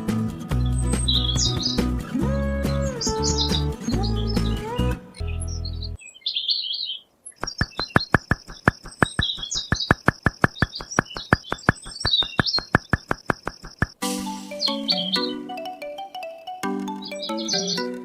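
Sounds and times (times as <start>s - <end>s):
birds chirping: 0.5s - 14.0s, 14.6s - 15.8s, 16.9s - 18.0s
rapid even clicks: 7.4s - 14.0s.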